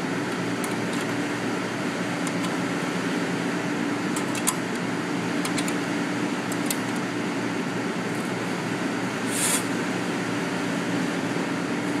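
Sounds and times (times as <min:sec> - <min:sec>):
fan hum: 0:00.0 - 0:12.0
short hiss: 0:09.3 - 0:09.7.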